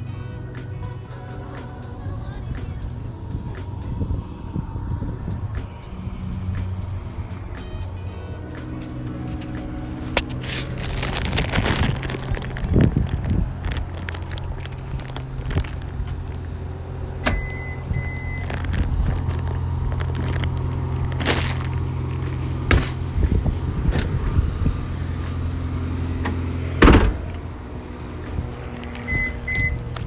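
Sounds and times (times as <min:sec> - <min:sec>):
car engine idling: 0:00.0 - 0:30.0
sharp clunks: 0:26.2 - 0:27.5.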